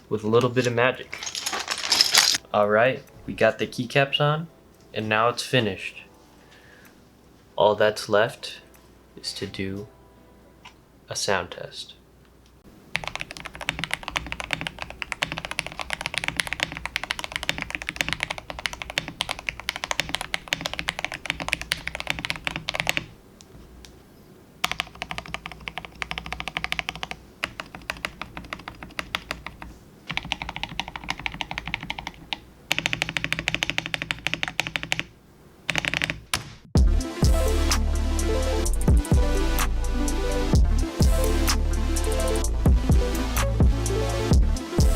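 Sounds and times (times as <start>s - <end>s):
mechanical keyboard typing: 12.9s - 23.1s, 24.6s - 35.1s, 35.7s - 36.2s.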